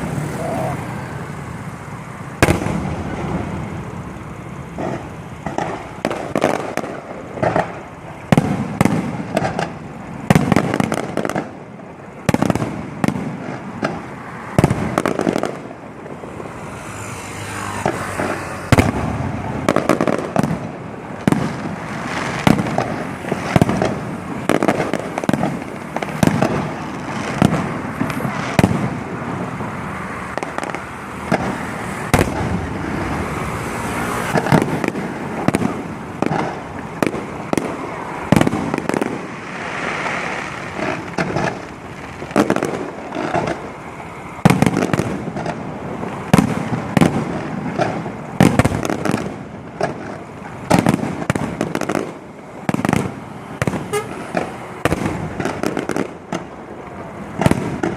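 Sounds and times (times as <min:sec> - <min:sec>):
steady rumbling haze: 0:00.0 - 0:16.9
fireworks bangs and crackles: 0:00.0 - 0:57.9.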